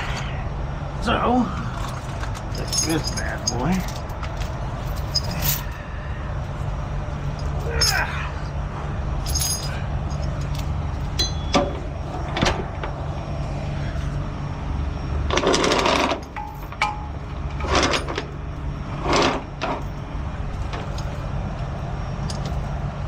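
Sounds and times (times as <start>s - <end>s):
hand tools clanking on metal: 1.8s - 5.8s, 11.2s - 12.5s, 16.2s - 18.3s.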